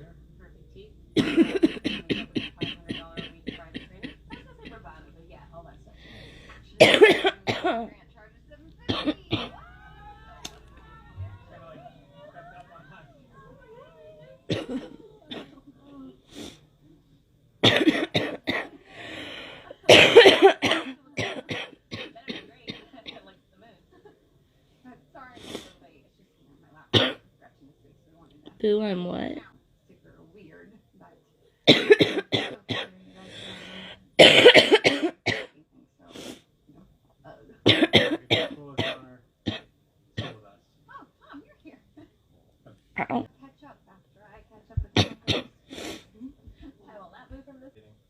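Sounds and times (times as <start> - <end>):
girl coughing: 1.2 - 4.8, 6.8 - 7.9, 8.9 - 9.6, 14.5 - 15.6, 17.6 - 18.8, 19.9 - 23.2, 26.9 - 27.2, 31.7 - 32.9, 34.2 - 35.5, 37.7 - 40.4, 45.0 - 45.5.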